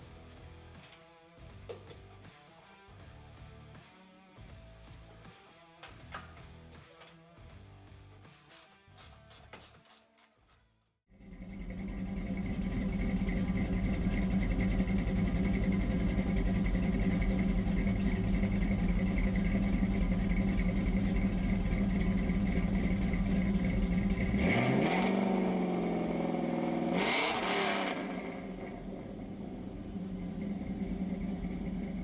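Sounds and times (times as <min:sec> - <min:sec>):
car engine idling and revving: 0:11.1 - 0:32.0.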